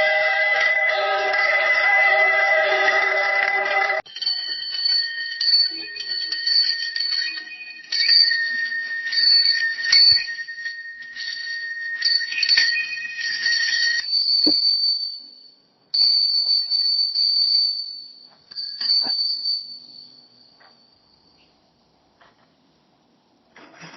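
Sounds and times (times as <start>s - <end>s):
bicycle bell ringing: 4.0s - 21.3s.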